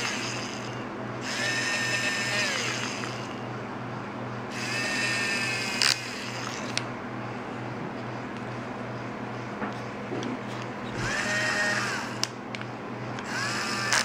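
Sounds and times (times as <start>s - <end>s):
toy drill whirring: 0.0s - 3.4s, 4.5s - 6.8s, 11.0s - 12.3s, 13.2s - 14.0s.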